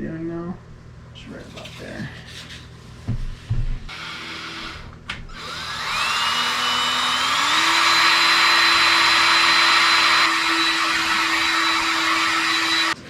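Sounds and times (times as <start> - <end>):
power drill whine: 3.9 - 13.0.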